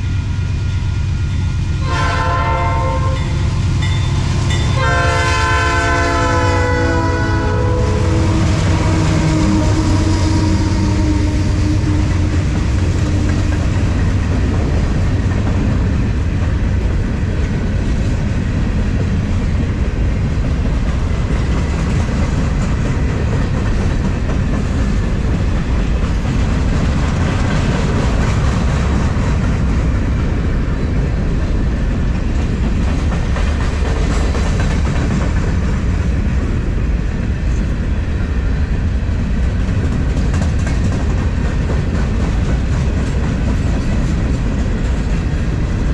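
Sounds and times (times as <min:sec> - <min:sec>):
heavy train rumble: 0:00.0 - 0:45.9
train wheels clacking on rail joints: 0:02.0 - 0:37.8, 0:39.2 - 0:45.9.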